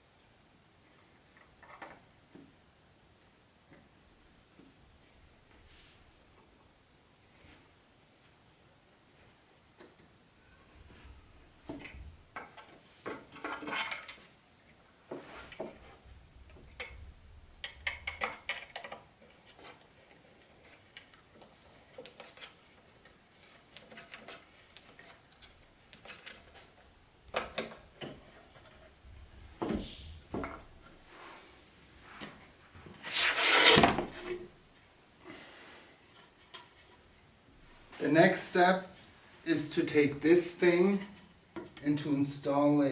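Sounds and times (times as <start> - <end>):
wooden parts clicking and knocking: 11.7 - 14.3, 17.6 - 19.8, 20.7 - 28.9.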